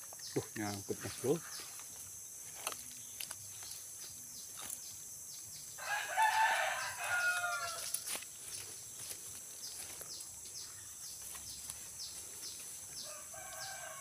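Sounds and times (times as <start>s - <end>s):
steady high hiss: 0.0s - 14.0s
rooster crowing: 5.8s - 8.0s, 13.0s - 14.0s.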